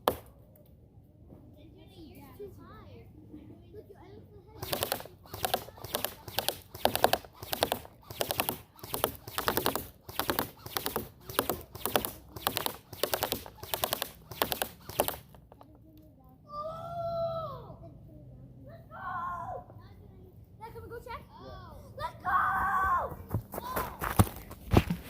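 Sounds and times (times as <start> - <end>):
footsteps crunching on dry ground: 22.6 - 25.0.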